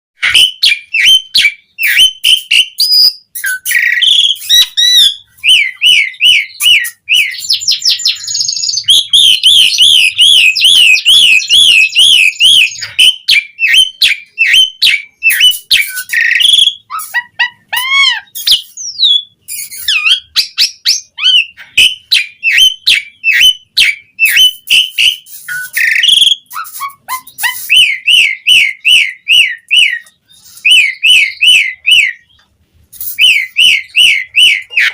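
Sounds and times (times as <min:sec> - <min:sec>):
bird chattering: 0:00.2 - 0:34.9
bird whistling and warbling: 0:00.2 - 0:34.9.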